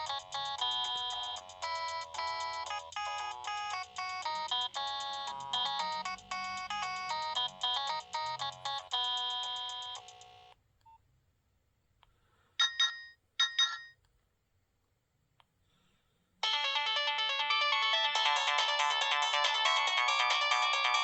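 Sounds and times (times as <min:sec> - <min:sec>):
polyphonic phone ringtone melody: 0:00.0 - 0:10.5, 0:16.4 - 0:21.0.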